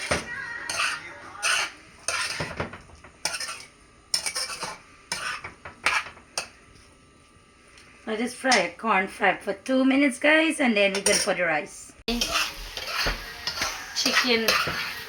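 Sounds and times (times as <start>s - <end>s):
spoon scraping a cooking pot: 0.0s - 7.0s, 10.9s - 11.4s, 12.1s - 15.0s
food frying: 0.0s - 7.2s, 12.1s - 15.0s.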